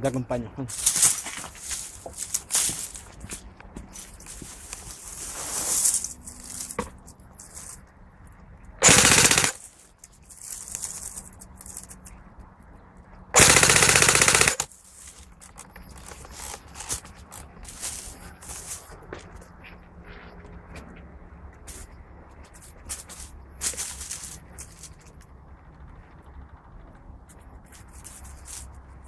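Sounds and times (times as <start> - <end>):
airsoft gun bursts: 8.8 - 9.7, 13.4 - 14.7.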